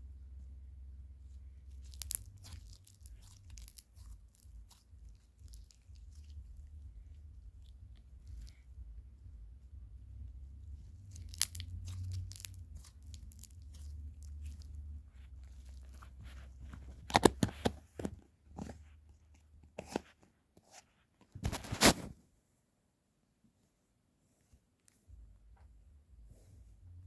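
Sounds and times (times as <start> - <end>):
slime crackling and popping: 1.7 - 6.8, 11.1 - 17.8.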